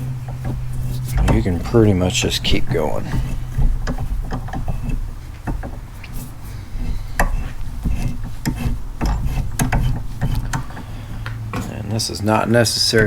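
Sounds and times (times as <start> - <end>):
low steady hum: 0.0 - 13.0
metal scraping: 0.0 - 13.0
tap cutting threads in steel: 6.8 - 11.7.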